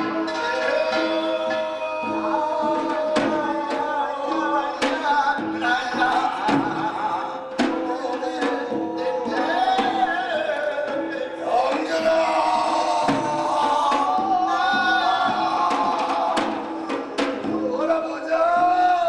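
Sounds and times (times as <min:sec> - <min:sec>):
drum strikes: 0:00.0 - 0:19.0
man chanting: 0:00.0 - 0:19.0.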